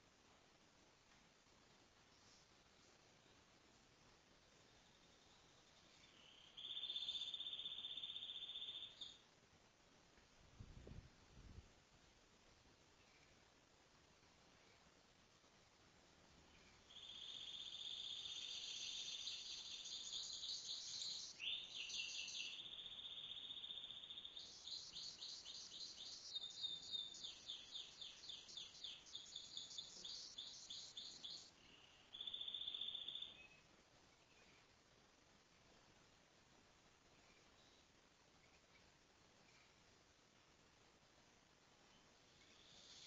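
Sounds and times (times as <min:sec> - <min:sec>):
songbird trilling: 0:06.0 - 0:09.2, 0:16.9 - 0:33.6.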